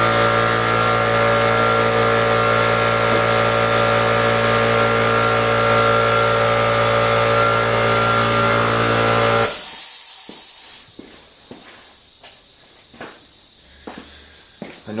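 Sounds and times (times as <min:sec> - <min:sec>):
diesel engine running: 0:00.0 - 0:09.5
brief hiss: 0:09.5 - 0:10.9.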